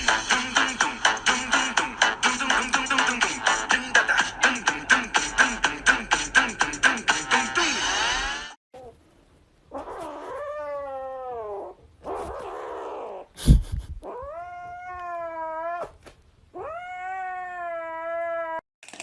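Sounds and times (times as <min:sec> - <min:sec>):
cat meowing: 0:14.0 - 0:16.0, 0:16.6 - 0:18.6.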